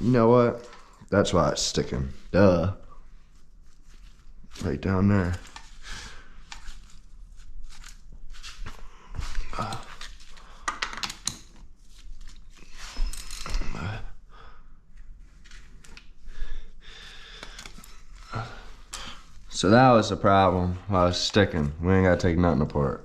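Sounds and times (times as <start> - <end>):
hands clicking and tapping parts: 9.7 - 11.7.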